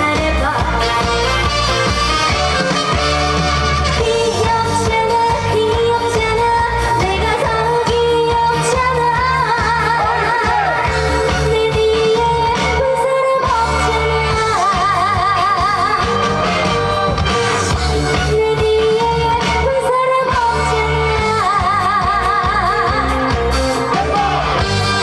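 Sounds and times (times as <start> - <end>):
woman singing: 0.0 - 1.4, 4.0 - 16.2, 18.0 - 23.6
amplified band: 0.0 - 25.0.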